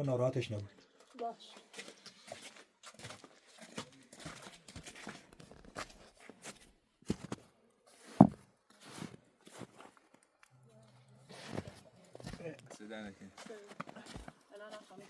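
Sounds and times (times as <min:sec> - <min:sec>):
footsteps crunching in snow: 0:01.6 - 0:10.0, 0:11.3 - 0:12.4.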